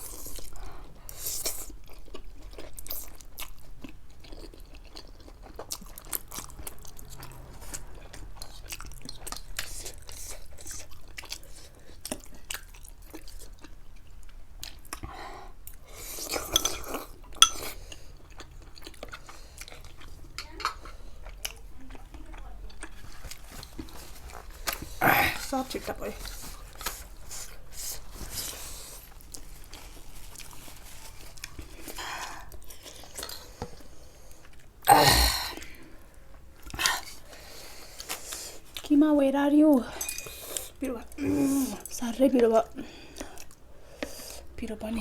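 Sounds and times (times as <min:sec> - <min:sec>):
chewing noodles: 0:00.0 - 0:39.0
utensil clinking against dish: 0:16.5 - 0:17.7, 0:40.0 - 0:40.4.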